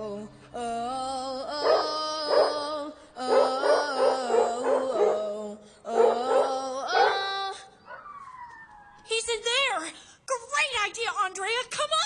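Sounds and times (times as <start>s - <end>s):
dogs howling in chorus: 1.5s - 9.0s.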